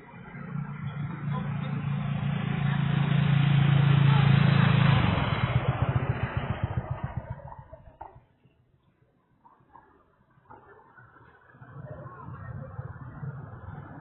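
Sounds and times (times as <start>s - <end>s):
motor vehicle engine passing by: 0.0s - 8.2s.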